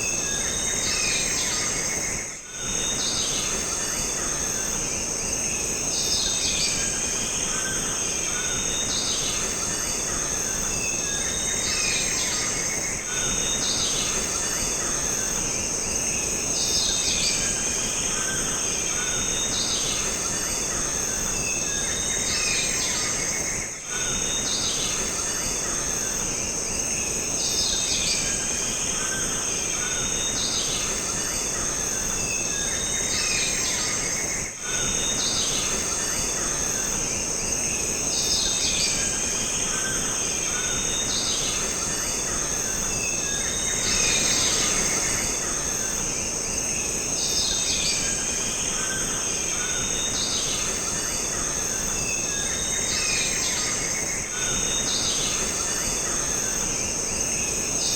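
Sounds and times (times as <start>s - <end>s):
high-pitched insect drone: 0.0s - 57.9s.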